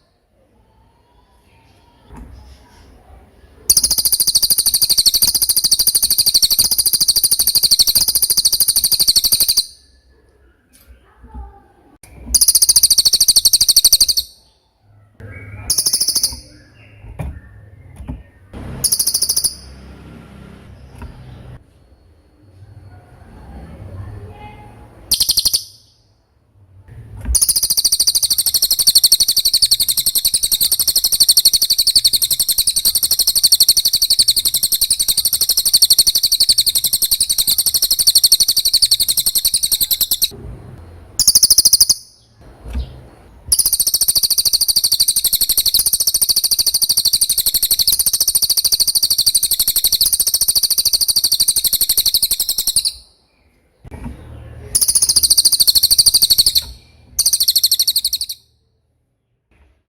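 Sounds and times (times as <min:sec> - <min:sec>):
bird shrill rapid trill: 0:03.7 - 0:09.9, 0:12.4 - 0:14.4, 0:15.6 - 0:16.6, 0:18.7 - 0:19.8, 0:25.1 - 0:26.0, 0:27.4 - 0:40.4, 0:41.2 - 0:42.2, 0:43.5 - 0:53.1, 0:54.8 - 0:58.5.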